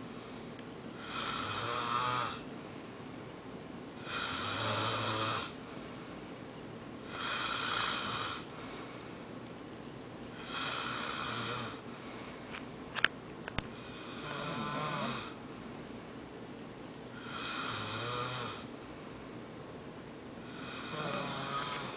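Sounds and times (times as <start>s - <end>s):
person snoring: 1.0s - 2.4s, 4.0s - 5.6s, 7.1s - 8.5s, 10.4s - 11.8s, 13.8s - 15.4s, 17.2s - 18.7s, 20.4s - 21.9s
quiet breathing: 4.0s - 9.4s, 10.3s - 12.7s, 13.6s - 16.3s, 17.1s - 19.5s, 20.4s - 21.9s.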